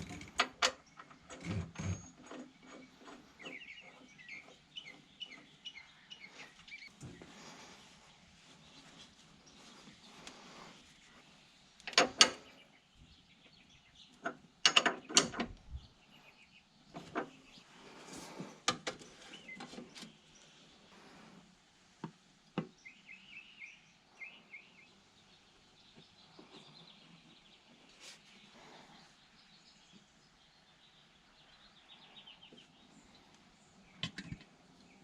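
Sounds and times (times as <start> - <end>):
clanks and clicks of handling: 0.0 - 4.6, 11.8 - 12.6, 14.2 - 15.6, 18.4 - 20.1
bird chirping: 0.7 - 17.8, 19.0 - 20.9, 22.7 - 35.0.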